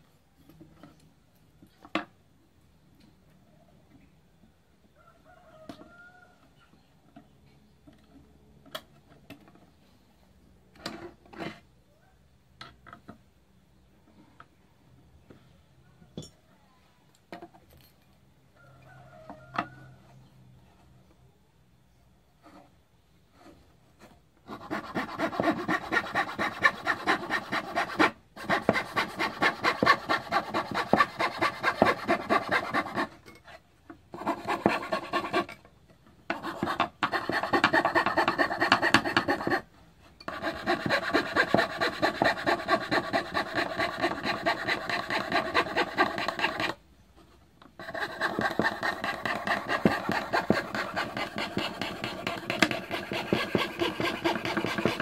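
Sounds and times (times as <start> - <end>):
fretsaw sawing: 24.5 - 33.1, 34.2 - 35.5, 36.4 - 39.6, 40.3 - 46.8, 47.8 - 55.0.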